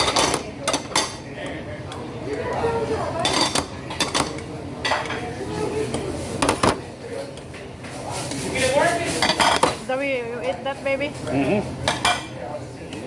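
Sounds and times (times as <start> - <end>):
cutlery and plates clinking: 0.0 - 1.2, 3.2 - 9.8, 11.8 - 12.4.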